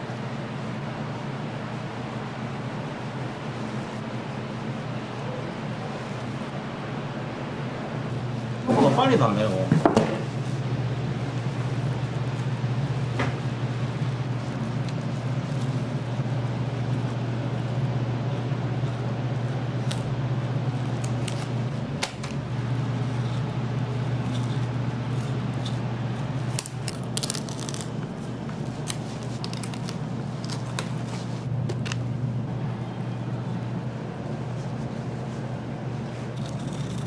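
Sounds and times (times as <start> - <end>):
steady low hum: 0.0 - 37.0
grill crackles and clicks: 10.4 - 32.1.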